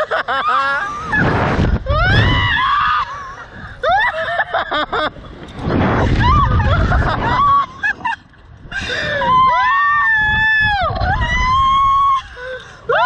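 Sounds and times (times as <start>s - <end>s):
wind rushing over microphone: 0.8s - 12.3s
riders screaming: 9.0s - 12.3s.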